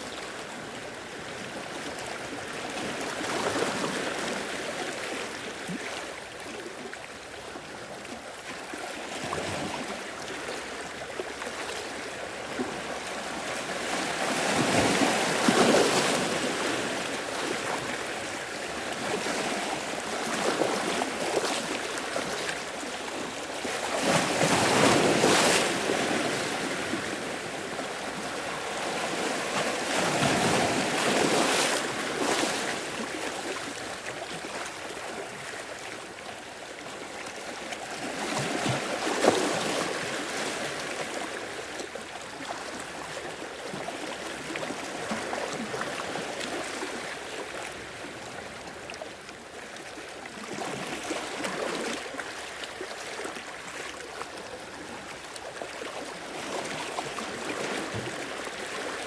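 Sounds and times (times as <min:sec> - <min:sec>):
ocean waves breaking on rocks: 0:23.7 - 0:33.7.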